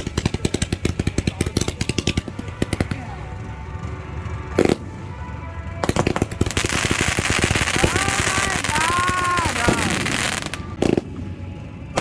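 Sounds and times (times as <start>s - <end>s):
fireworks popping and crackling: 0.0s - 3.2s, 4.5s - 4.9s, 5.8s - 11.2s.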